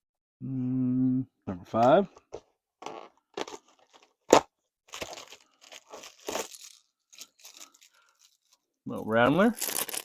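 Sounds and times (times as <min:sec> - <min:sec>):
cardboard tearing: 0:02.8 - 0:06.8
packaging crinkling: 0:02.8 - 0:08.7, 0:09.4 - 0:10.0.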